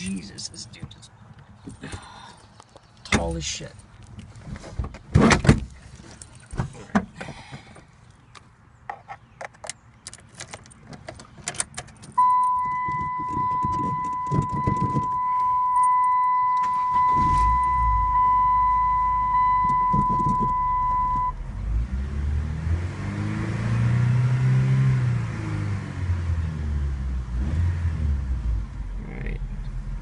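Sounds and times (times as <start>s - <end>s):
car engine starting and running: 10.0s - 30.0s
car electronic warning tone: 12.2s - 21.4s.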